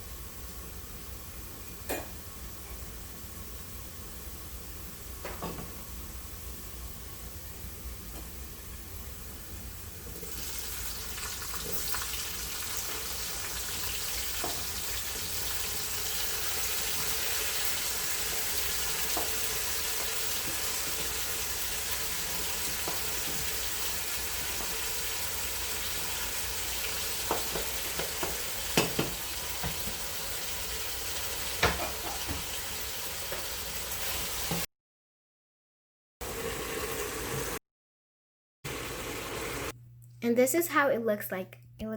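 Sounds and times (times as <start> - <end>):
vegetables sizzling in oil: 10.0 - 34.7.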